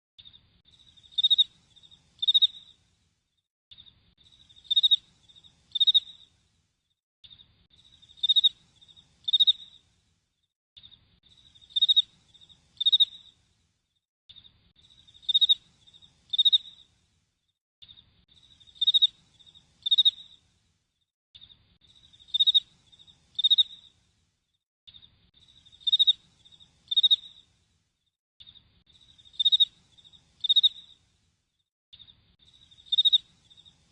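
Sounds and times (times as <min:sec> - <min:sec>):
cricket chirping: 0:00.7 - 0:02.8, 0:04.2 - 0:06.4, 0:07.3 - 0:09.9, 0:10.8 - 0:13.4, 0:14.8 - 0:17.0, 0:18.3 - 0:20.5, 0:21.8 - 0:24.0, 0:25.4 - 0:33.9.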